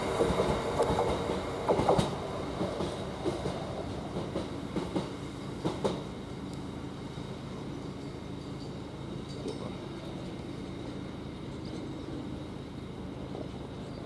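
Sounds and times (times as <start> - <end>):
freight train rumbling: 0.0 - 14.0.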